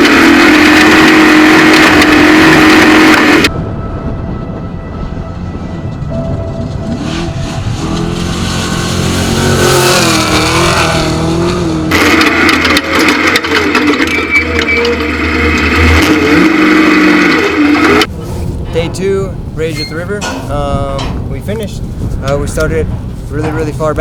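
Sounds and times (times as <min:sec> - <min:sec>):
truck engine revving: 0:00.0 - 0:03.5, 0:05.3 - 0:18.7.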